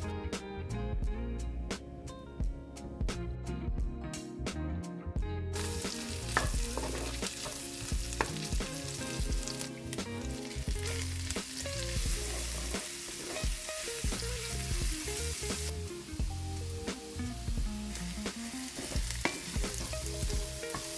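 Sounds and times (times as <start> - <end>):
utensil scraping a pan: 5.6 - 8.3, 12.1 - 13.6
food sizzling in a frying pan: 5.6 - 20.9.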